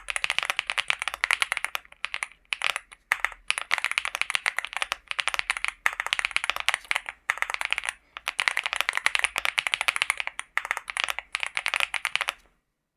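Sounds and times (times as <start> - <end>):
fast typing on mechanical keyboard: 0.0 - 12.5.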